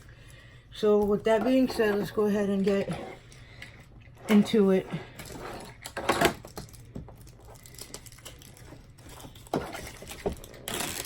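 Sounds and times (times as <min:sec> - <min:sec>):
packaging rustling: 0:05.2 - 0:11.0.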